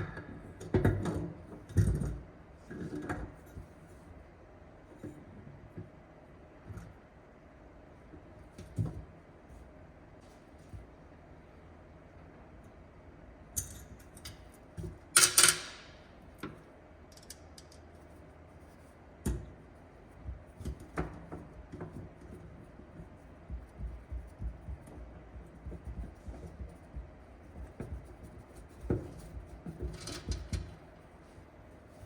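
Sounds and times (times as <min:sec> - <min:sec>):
metal tools clicking and clinking: 0:15.2 - 0:15.9.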